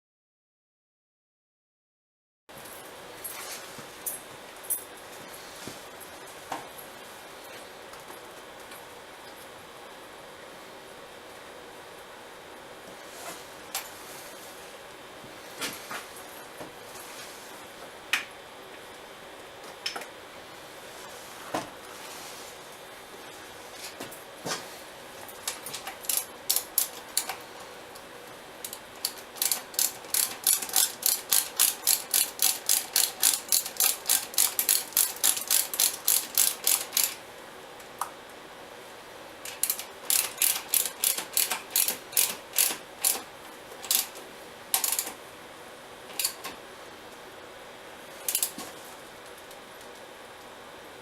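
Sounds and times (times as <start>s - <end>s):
ratchet wrench clicking: 28.6s - 37.2s, 39.5s - 43.2s, 43.8s - 44.1s, 44.8s - 45.1s.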